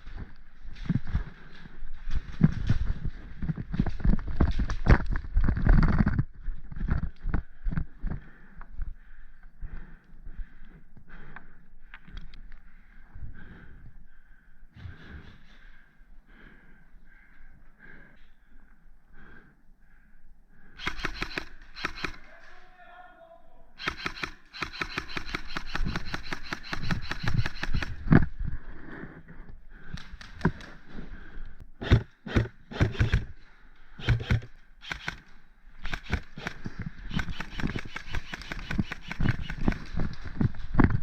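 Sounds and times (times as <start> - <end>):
airsoft guns full-auto bursts: 20.8 - 22.5, 23.8 - 28.0, 31.8 - 33.3, 34.0 - 40.2.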